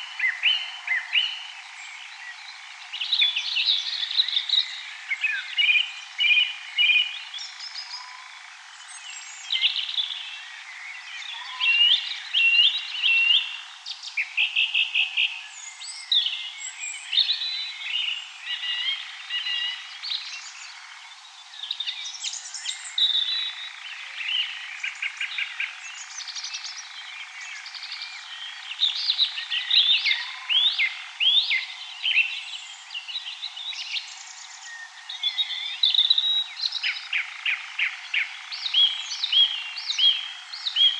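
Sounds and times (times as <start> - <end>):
birds singing and calling: 0.0 - 40.9.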